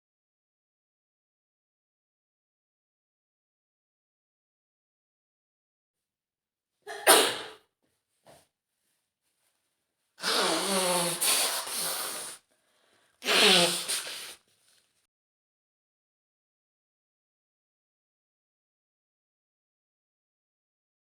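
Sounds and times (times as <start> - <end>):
woman sneezing: 6.9 - 7.6, 10.2 - 12.4, 13.2 - 14.4.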